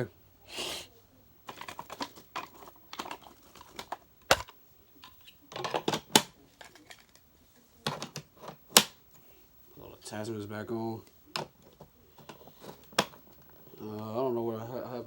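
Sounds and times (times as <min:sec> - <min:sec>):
hard plastic clicking and knocking: 0:01.5 - 0:07.1, 0:07.9 - 0:09.0, 0:11.3 - 0:13.5.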